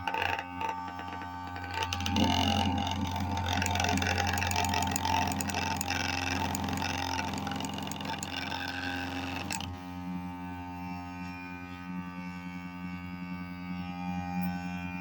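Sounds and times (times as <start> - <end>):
rattling scraping noise: 0.0 - 9.8
electric hair clipper buzzing: 0.0 - 12.3.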